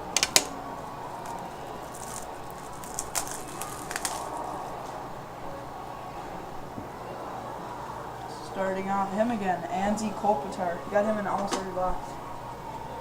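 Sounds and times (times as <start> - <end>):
faint room hum: 0.0 - 13.0
sharp clicks of cards: 0.1 - 0.6
card pack crinkling: 0.1 - 4.6.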